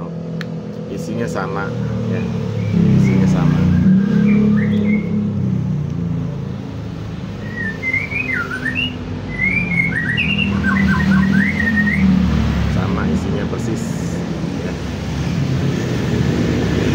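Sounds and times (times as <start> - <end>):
songbird chirping and whistling: 2.1 - 5.4, 7.4 - 12.2.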